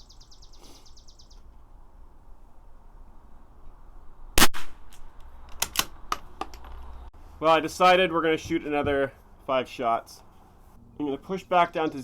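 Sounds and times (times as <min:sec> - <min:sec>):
rifle shot: 0:04.4 - 0:05.1
sharp clicks: 0:04.4 - 0:06.6.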